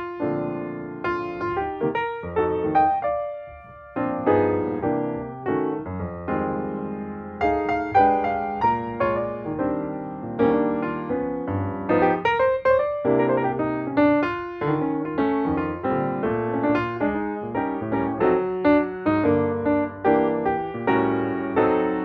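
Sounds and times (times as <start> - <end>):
piano music: 0.0 - 22.0.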